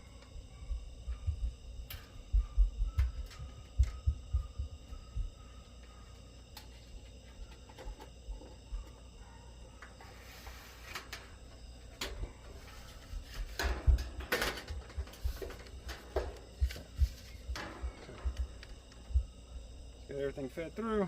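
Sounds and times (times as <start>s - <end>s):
insects chirring: 0.0s - 21.0s.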